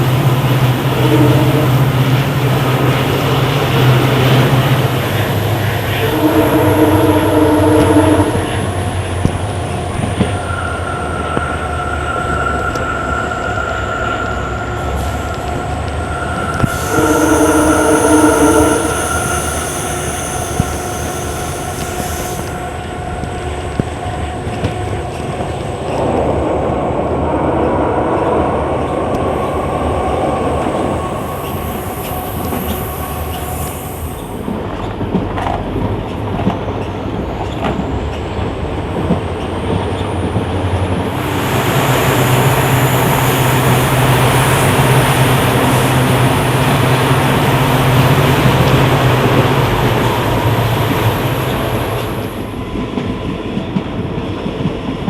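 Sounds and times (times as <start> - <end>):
high-pitched wheel squeal: 0.7 - 26.0.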